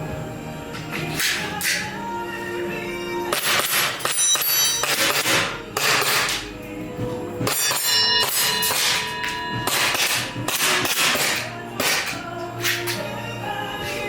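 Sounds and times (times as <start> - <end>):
sustained music tones: 0.0 - 14.0
sharp ringing hits: 3.3 - 6.2, 7.4 - 12.0.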